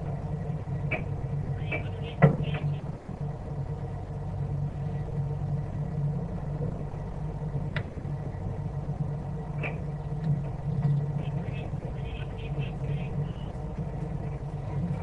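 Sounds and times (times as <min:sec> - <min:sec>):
boat engine droning: 0:00.0 - 0:15.0.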